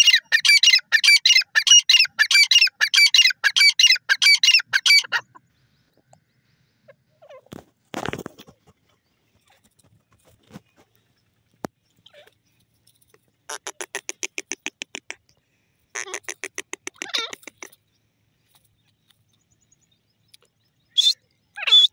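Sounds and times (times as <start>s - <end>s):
bird rattling call: 12.0s - 15.2s, 15.9s - 17.8s.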